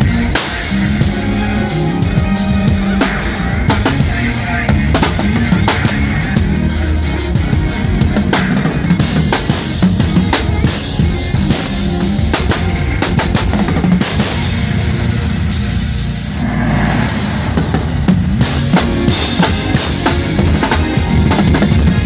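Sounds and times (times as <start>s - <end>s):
drum kit played hard: 0.0s - 22.0s
cymbal crashes: 14.3s - 20.4s.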